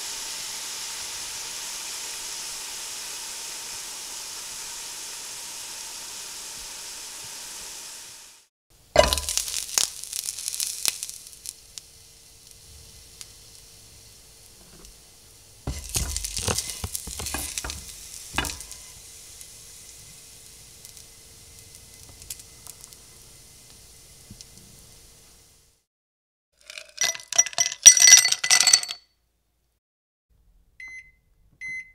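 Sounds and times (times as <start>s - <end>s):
food sizzling in a pan: 0.0s - 25.9s.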